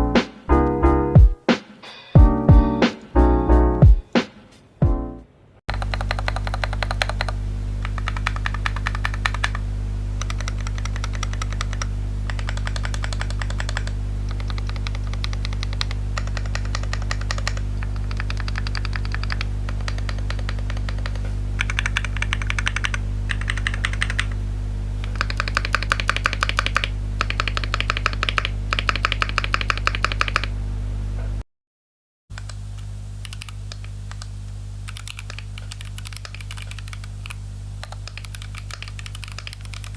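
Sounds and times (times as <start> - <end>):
mechanical keyboard typing: 5.7 - 9.6, 10.2 - 24.4, 25.0 - 30.5, 33.2 - 34.3, 34.9 - 39.9.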